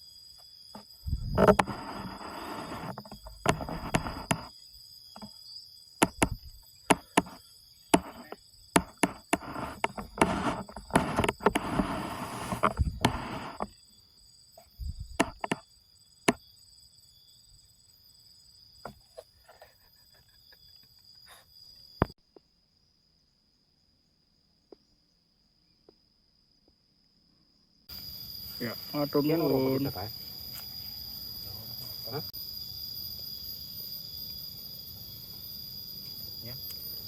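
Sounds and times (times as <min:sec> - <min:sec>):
high-pitched insect drone: 0:00.0 - 0:22.2, 0:27.9 - 0:37.0
rustling: 0:01.2 - 0:04.5, 0:06.0 - 0:13.7
sharp clicks and knocks: 0:01.3 - 0:04.5, 0:06.0 - 0:07.4, 0:08.0 - 0:13.7, 0:15.2 - 0:15.6.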